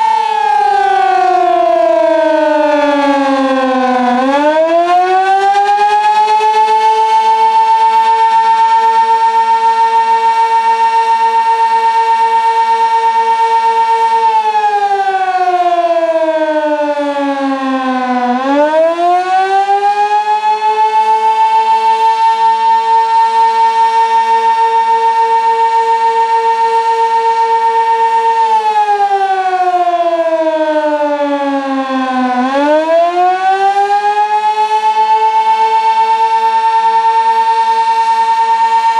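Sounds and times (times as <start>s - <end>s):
warning siren wailing: 0.0s - 38.9s.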